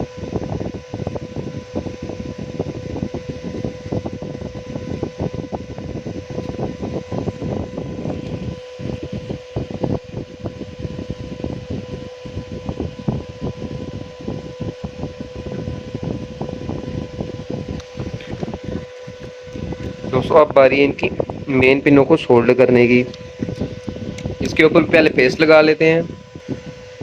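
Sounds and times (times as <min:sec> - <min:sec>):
small fan humming: 0:00.0 - 0:27.0
crackling and rustling noise: 0:14.8 - 0:20.3.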